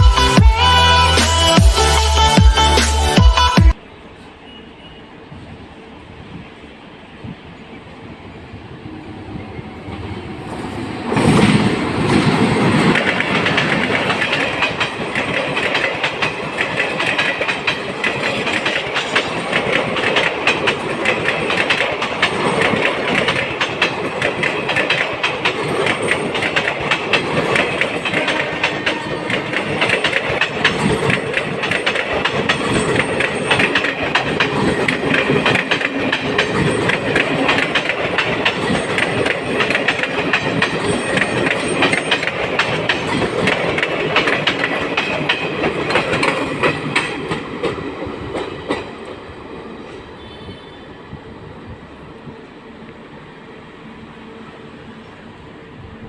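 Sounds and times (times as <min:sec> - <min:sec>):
train wheels clattering over rail joints: 0:10.6 - 0:49.2.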